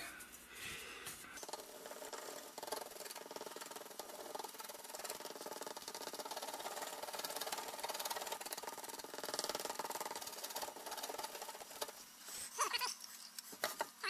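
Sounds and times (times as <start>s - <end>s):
small motor clattering: 1.4s - 12.0s.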